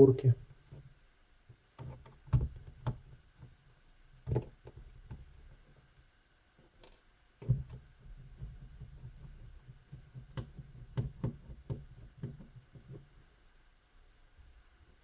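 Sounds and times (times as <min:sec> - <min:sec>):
faint low hum: 0:00.0 - 0:01.0.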